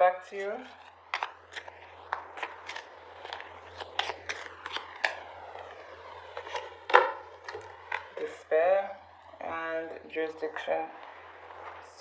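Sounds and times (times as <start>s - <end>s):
cards clicking and scraping: 0.7s - 5.2s, 6.3s - 8.2s.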